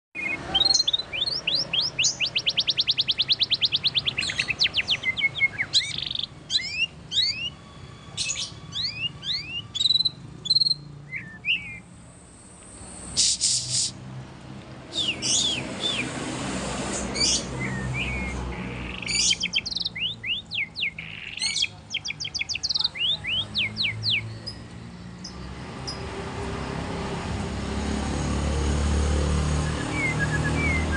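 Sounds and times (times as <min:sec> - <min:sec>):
bird singing: 0:00.2 - 0:12.0, 0:14.9 - 0:16.2, 0:17.0 - 0:26.1, 0:29.3 - 0:30.9
low rumble of passing vehicle: 0:00.2 - 0:30.9.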